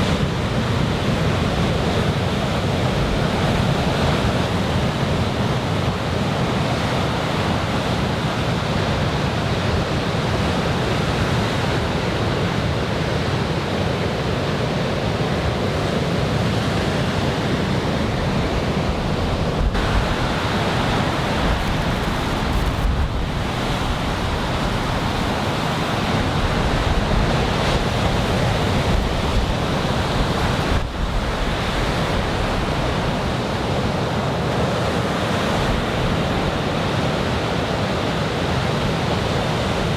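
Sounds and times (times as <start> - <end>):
ocean surf breaking: 13.6 - 39.9
wind rumbling on microphone: 16.3 - 38.3.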